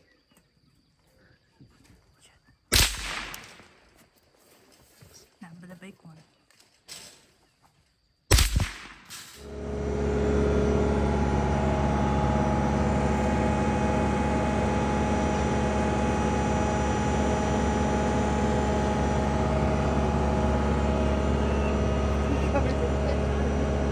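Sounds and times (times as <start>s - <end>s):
engine humming steadily: 9.4s - 23.9s.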